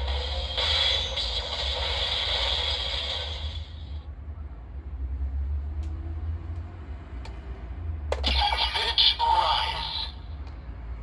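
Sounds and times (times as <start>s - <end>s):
toy speaker hiss: 0.0s - 4.0s, 8.2s - 10.2s.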